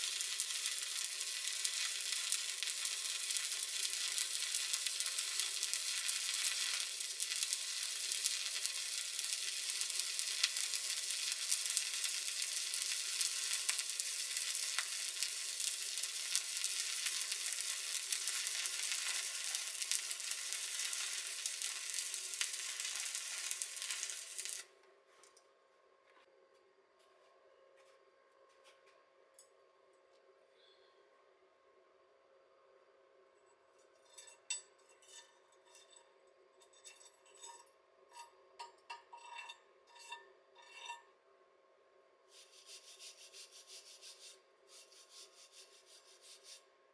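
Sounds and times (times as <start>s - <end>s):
welding arc sizzling and crackling: 0.0s - 24.7s, 42.3s - 46.6s.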